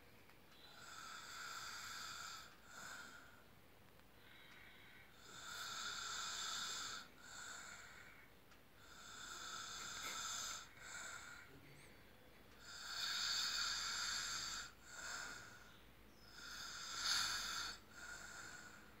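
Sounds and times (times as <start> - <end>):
people snoring: 0.6 - 3.3, 5.1 - 8.2, 8.8 - 11.6, 12.6 - 19.0.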